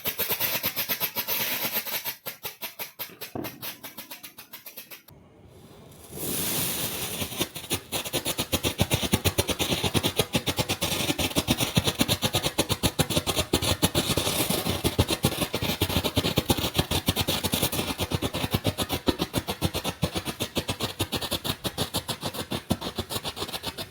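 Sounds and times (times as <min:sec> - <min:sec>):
firecracker crackling pops: 0:00.0 - 0:08.7
firecracker fuse hissing: 0:00.0 - 0:09.9.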